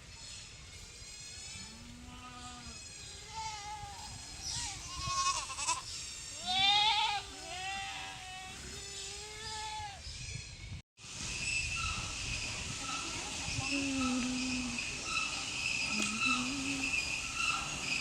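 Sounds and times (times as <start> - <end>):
animals bleating: 1.5 - 10.0, 15.9 - 17.8
steady hiss: 11.0 - 18.0.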